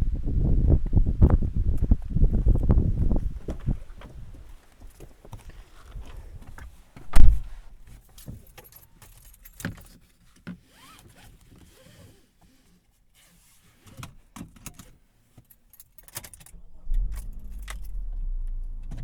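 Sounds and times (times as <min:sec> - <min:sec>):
heavy thump: 0:07.0 - 0:07.6, 0:16.6 - 0:19.0
keys jingling: 0:15.5 - 0:18.8.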